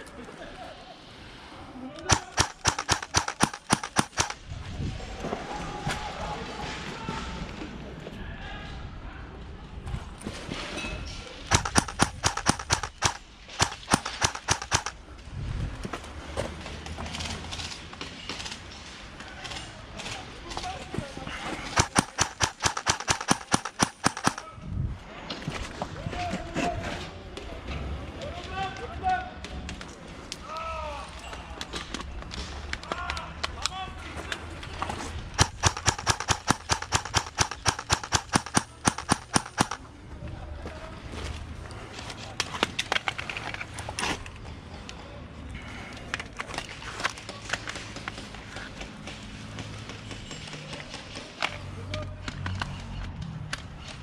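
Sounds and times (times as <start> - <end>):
airsoft gun shots: 2.0 - 4.4, 11.5 - 15.0, 21.7 - 24.5, 35.4 - 39.8.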